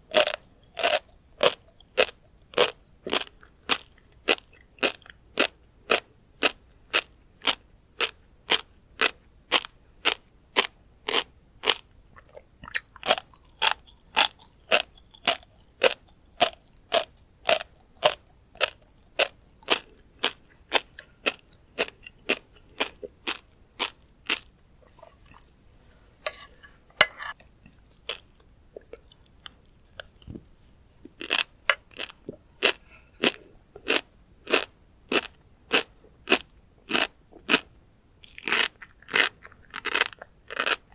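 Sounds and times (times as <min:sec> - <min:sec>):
fish roe crunching and popping: 0:06.4 - 0:24.5, 0:38.2 - 0:40.9.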